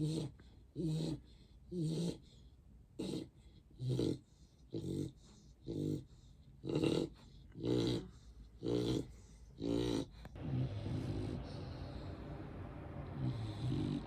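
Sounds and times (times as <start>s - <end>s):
dog snoring: 0.0s - 2.4s, 3.0s - 14.0s.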